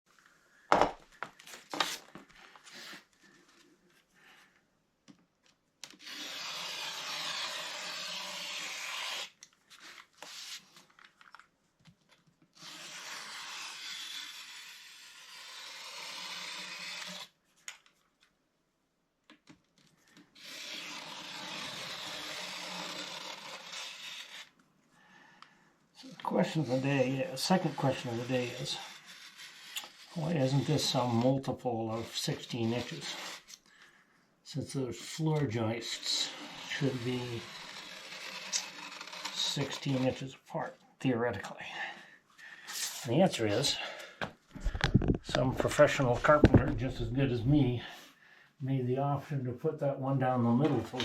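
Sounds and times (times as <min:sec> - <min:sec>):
utility knife scoring drywall: 0:05.9 - 0:10.7, 0:12.6 - 0:17.4, 0:20.3 - 0:24.6, 0:26.0 - 0:33.6, 0:35.0 - 0:40.3.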